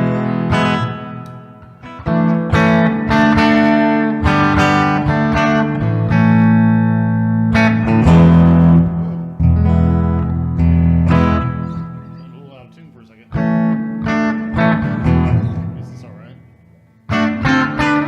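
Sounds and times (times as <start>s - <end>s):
clean electric guitar chords: 0.0s - 18.0s.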